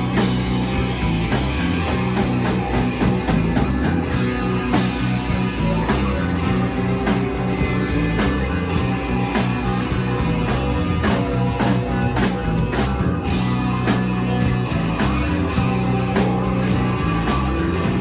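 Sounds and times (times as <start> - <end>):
drum kit beat: 0.0 - 18.0
heavy bass and guitar: 0.0 - 18.0.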